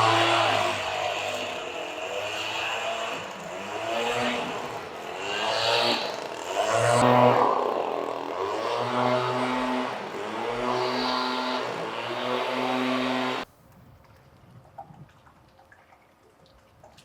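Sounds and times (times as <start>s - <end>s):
vehicle engine revving: 0.0s - 13.5s.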